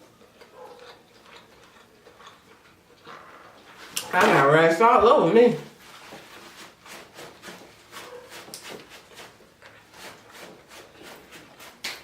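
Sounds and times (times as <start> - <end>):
mouth smacks and chewing clicks: 0.3 - 2.8.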